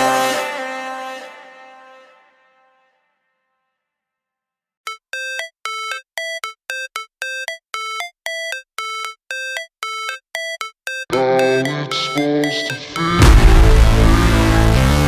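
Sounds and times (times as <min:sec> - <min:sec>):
ringtone-like chime: 0:04.9 - 0:13.6
electronic synth riff: 0:04.9 - 0:15.0.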